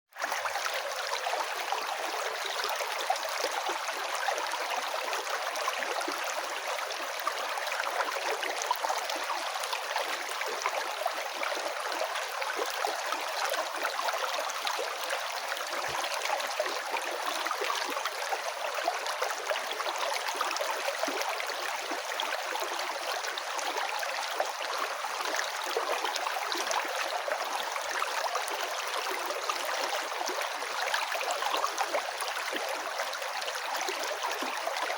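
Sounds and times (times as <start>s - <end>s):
stream flowing and rippling: 0.1s - 34.9s.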